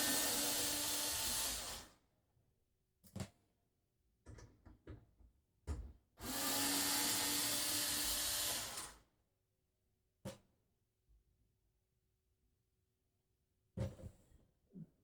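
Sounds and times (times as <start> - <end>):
power drill running: 0.0 - 1.8, 6.2 - 8.9.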